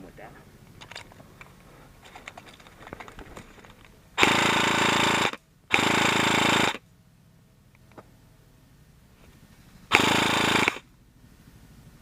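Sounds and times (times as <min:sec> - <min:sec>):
airsoft rifle full-auto bursts: 0:04.2 - 0:06.8, 0:09.9 - 0:10.9.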